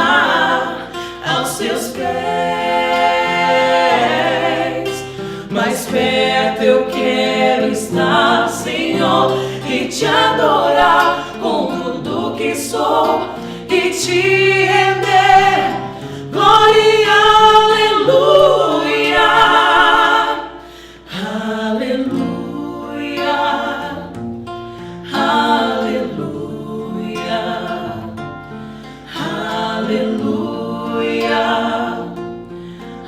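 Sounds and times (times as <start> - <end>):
vocal trio singing in harmony: 0.0 - 33.0.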